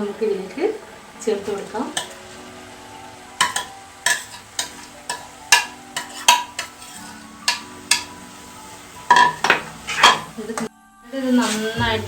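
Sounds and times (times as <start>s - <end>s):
metal spoon clinking on pan: 1.9s - 2.3s, 3.4s - 8.2s, 9.0s - 10.4s.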